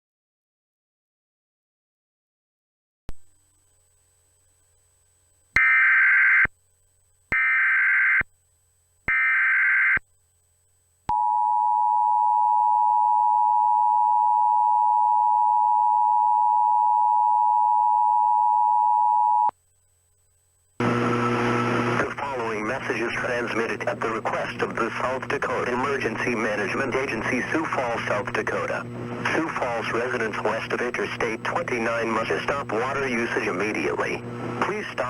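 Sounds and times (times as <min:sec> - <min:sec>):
announcer speaking: 0:22.0 - 0:35.0.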